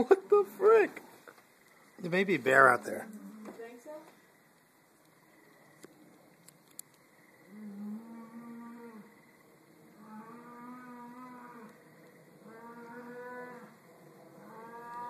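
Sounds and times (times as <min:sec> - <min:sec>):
small clicks: 0:05.8 - 0:07.0
distant cow mooing: 0:07.5 - 0:09.1, 0:09.9 - 0:15.0.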